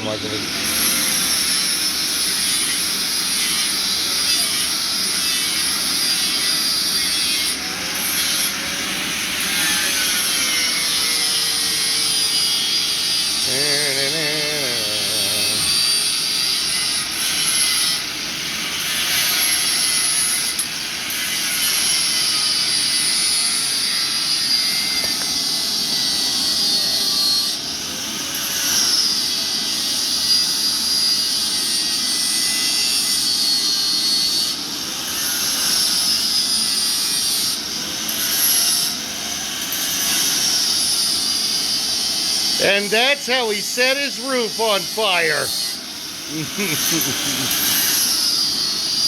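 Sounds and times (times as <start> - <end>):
angle grinder grinding steel: 0.1 - 22.5, 35.1 - 49.0.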